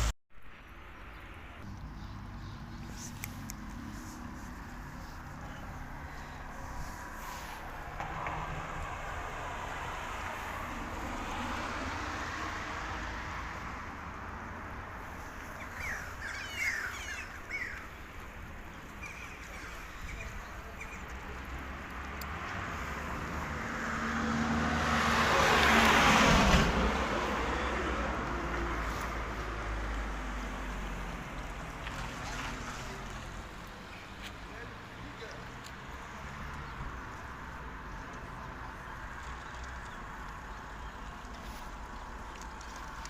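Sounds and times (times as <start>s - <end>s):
passing vehicle: 1.4s - 43.0s
bird chirps: 15.6s - 18.1s.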